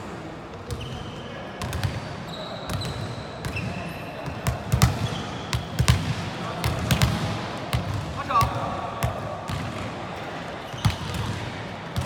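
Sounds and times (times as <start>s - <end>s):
players' voices: 0.0s - 12.0s
sneakers squeaking on court: 0.7s - 8.0s, 10.6s - 11.4s.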